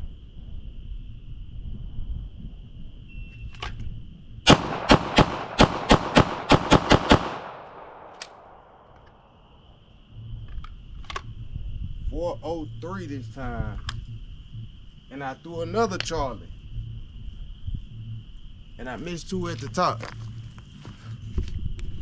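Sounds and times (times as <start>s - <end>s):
rapid pistol shots with echo: 4.5s - 8.8s.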